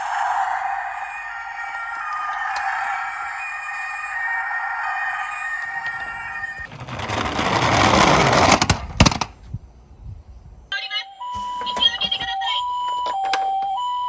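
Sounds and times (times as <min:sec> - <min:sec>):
toy electronic tone: 0:00.9 - 0:07.5, 0:10.7 - 0:14.0
toy car rattling down plastic slope: 0:05.8 - 0:09.4.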